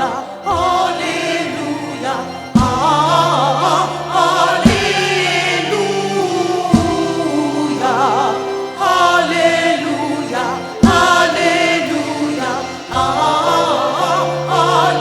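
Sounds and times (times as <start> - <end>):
choir singing gospel chorus: 0.0 - 15.0
sustained keyboard chords: 0.0 - 15.0
low drum hits: 2.6 - 3.2, 4.6 - 5.4, 6.8 - 7.2.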